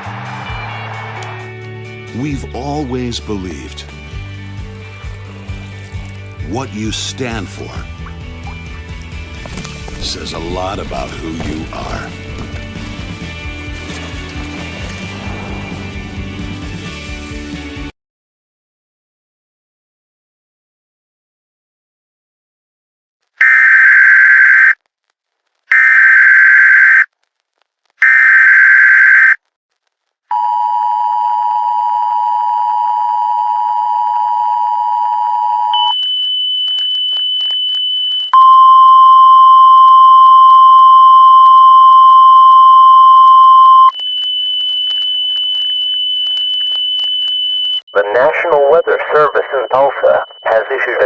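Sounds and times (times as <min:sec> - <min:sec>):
digital data bursts: 0:23.4 - 0:24.8, 0:25.7 - 0:27.1, 0:28.0 - 0:29.4
high steady tone: 0:23.4 - 0:24.8, 0:25.7 - 0:27.1, 0:28.0 - 0:29.4
single-pitch alert tone: 0:23.4 - 0:24.8, 0:25.7 - 0:27.1, 0:28.0 - 0:29.4
two-tone attention signal: 0:23.4 - 0:24.8, 0:25.7 - 0:27.1, 0:28.0 - 0:29.4.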